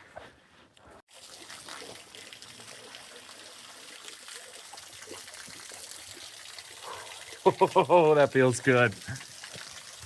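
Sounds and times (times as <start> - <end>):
small waterfall splashing: 1.1 - 10.0.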